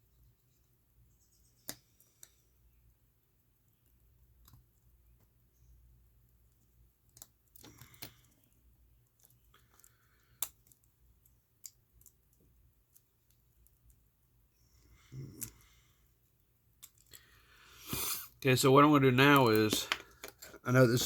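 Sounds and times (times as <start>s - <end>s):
small parts and tools clicking: 3.6s - 5.3s, 6.0s - 14.1s, 15.3s - 15.7s, 16.6s - 17.3s, 19.2s - 20.7s.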